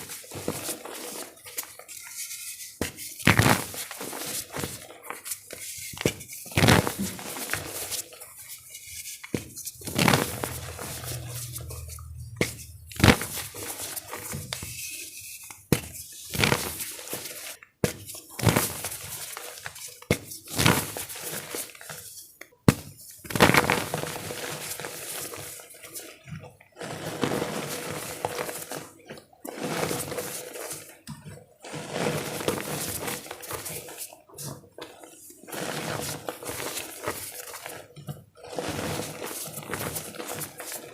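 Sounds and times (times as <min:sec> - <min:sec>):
soft crumbling and squishing: 0:00.0 - 0:14.8, 0:23.2 - 0:40.9
wet chalk crunching: 0:09.6 - 0:14.4.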